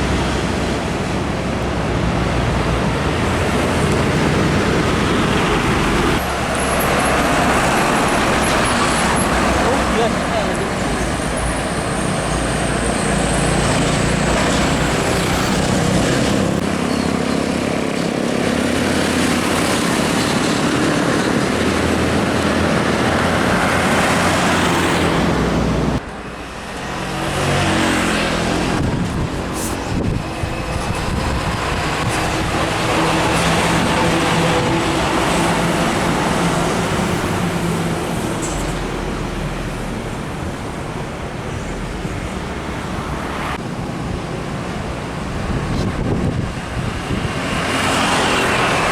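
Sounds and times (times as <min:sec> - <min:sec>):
trucks passing on highway: 0:00.0 - 0:48.9
tyre and road noise: 0:00.0 - 0:48.9.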